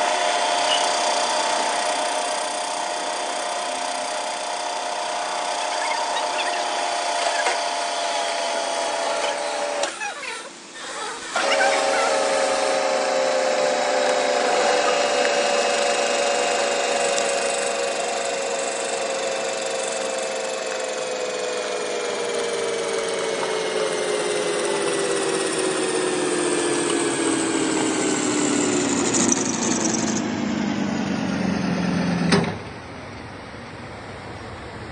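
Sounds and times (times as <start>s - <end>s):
metal cutting noise: 0.0s - 32.3s
cutting machine whine: 0.0s - 34.9s.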